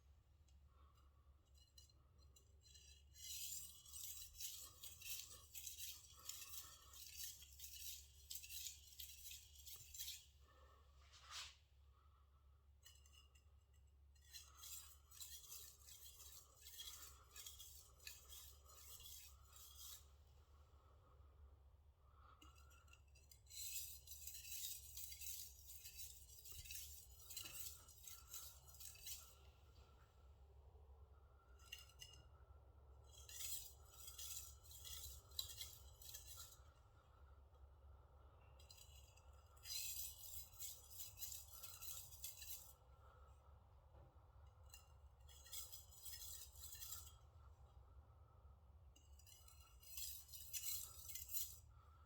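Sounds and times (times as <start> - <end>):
knife blade rubbing on whetstone: 2.7 - 10.4, 11.1 - 11.6, 14.2 - 20.2, 22.4 - 29.5, 33.1 - 36.6, 38.7 - 42.8, 45.2 - 47.2, 49.2 - 51.8.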